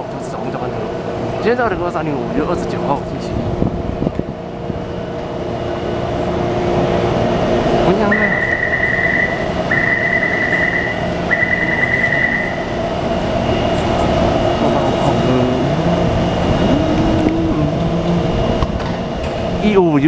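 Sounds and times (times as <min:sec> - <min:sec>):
train running hum: 0:00.0 - 0:20.0
low drive tones shifting pitch: 0:03.4 - 0:19.8
long high beeps: 0:08.0 - 0:12.8.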